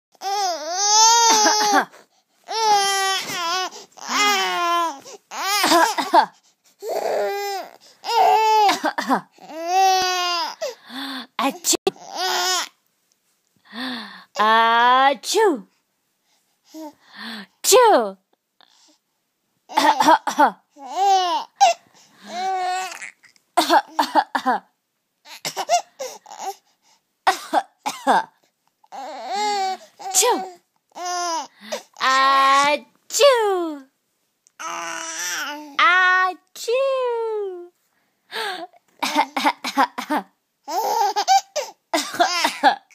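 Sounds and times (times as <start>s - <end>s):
baby wailing: 0.2s - 1.9s, 2.5s - 6.2s, 6.8s - 8.8s, 9.4s - 10.7s, 11.9s - 12.7s, 20.8s - 23.3s, 28.9s - 31.5s, 34.6s - 35.8s, 40.7s - 42.7s
baby laughing: 0.9s - 1.9s, 5.4s - 6.4s
baby coughing: 1.0s - 1.9s, 5.4s - 6.4s, 8.6s - 9.3s, 19.7s - 20.6s, 23.0s - 24.6s, 25.3s - 25.9s, 27.3s - 28.4s, 39.0s - 42.9s
baby vocalizing: 20.8s - 23.4s, 34.6s - 35.8s, 40.7s - 42.9s.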